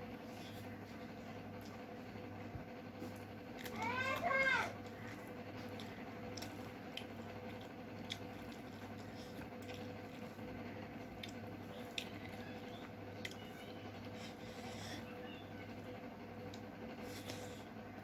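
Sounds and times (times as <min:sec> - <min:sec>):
steady low hum: 0:00.0 - 0:18.0
wet chewing: 0:04.8 - 0:15.1.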